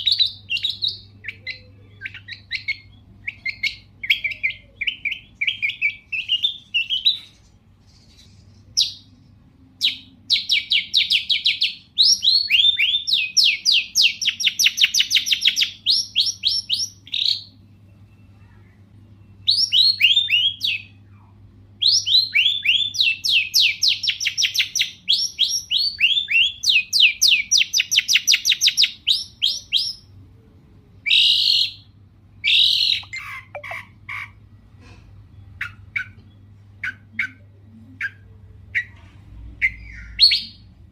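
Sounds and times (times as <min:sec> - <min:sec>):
shrike chattering song: 0:32.9 - 0:34.4.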